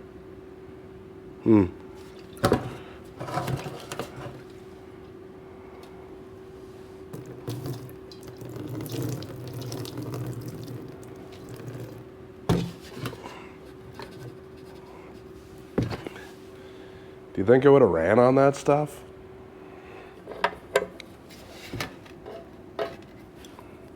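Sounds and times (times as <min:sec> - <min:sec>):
liquid pouring into container: 0:07.1 - 0:12.0.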